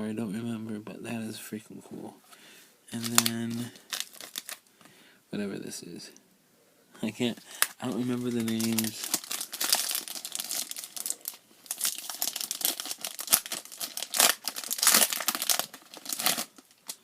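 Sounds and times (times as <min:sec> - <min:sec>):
foil wrapper crinkling: 0:03.0 - 0:04.7, 0:07.5 - 0:17.0.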